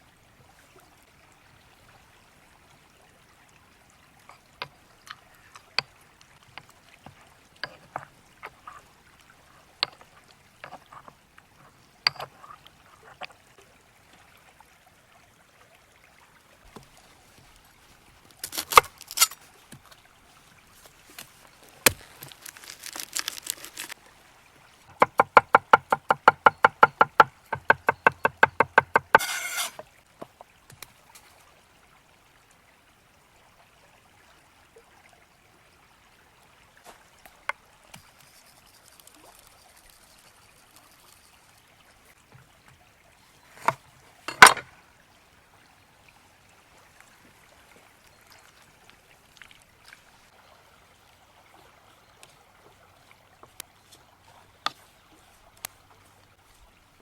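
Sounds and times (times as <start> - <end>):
knife chopping on wooden board: 25.0 - 29.8.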